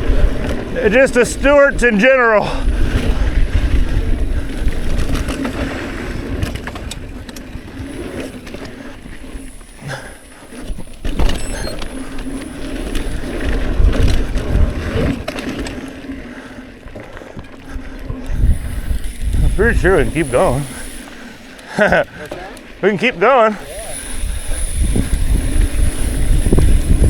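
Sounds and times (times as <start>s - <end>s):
bike tyres rumbling on dirt: 0.0s - 27.0s
bike knocks and rattles: 2.9s - 9.3s, 10.2s - 16.1s.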